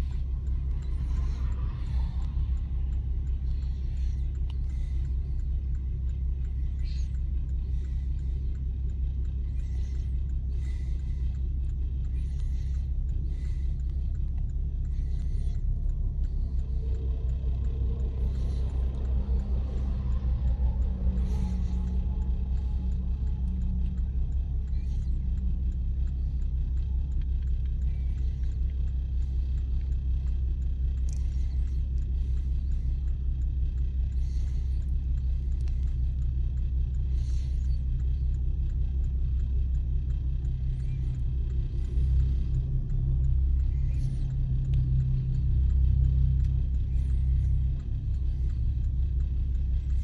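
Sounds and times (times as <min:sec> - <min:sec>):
diesel locomotive rumbling: 0:00.0 - 0:50.0.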